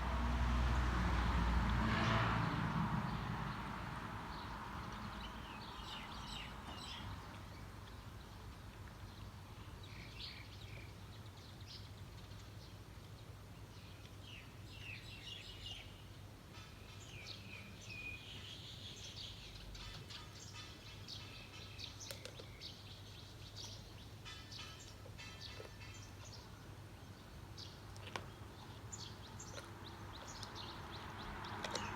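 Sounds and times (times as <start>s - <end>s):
small birds chirping: 16.6s - 31.9s.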